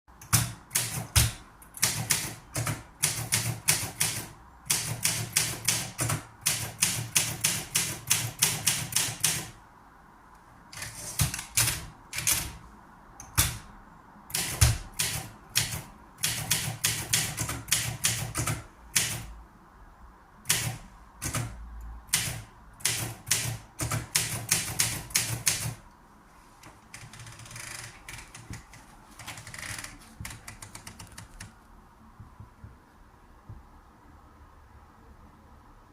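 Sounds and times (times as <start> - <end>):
typewriter key strikes: 0.2 - 9.6, 10.8 - 12.6, 13.2 - 13.7, 14.3 - 19.3, 20.5 - 25.8.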